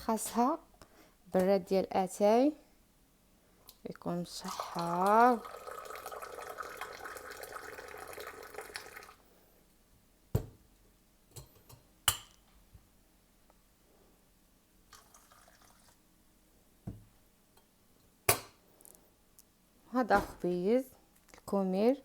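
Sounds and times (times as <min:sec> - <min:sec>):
tea pouring into a glass: 0:04.3 - 0:09.2, 0:14.9 - 0:16.0.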